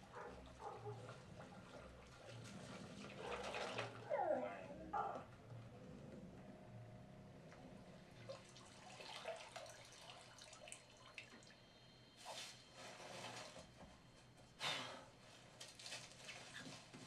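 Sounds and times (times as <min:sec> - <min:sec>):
soft drips and rustles: 0:00.0 - 0:04.2, 0:07.4 - 0:14.3, 0:15.2 - 0:17.0.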